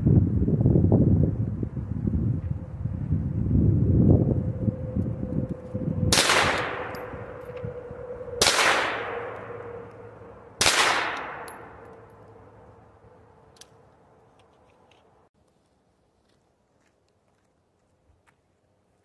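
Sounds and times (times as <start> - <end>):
gunshots ringing out: 6.1 - 7.0, 8.4 - 9.4, 10.6 - 11.8.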